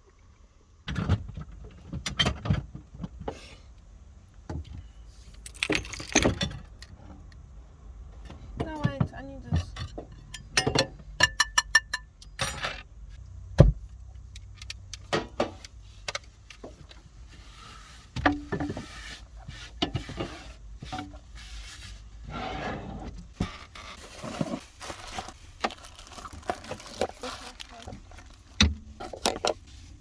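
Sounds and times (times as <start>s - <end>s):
rustling: 23.7s - 30.0s.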